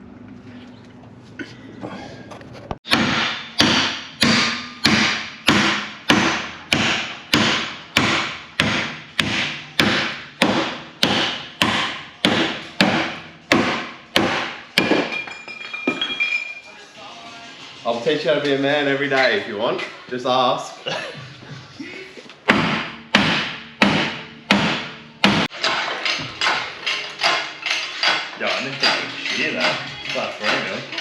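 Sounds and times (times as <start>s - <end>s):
hammer striking with ringing: 22.6s - 31.0s.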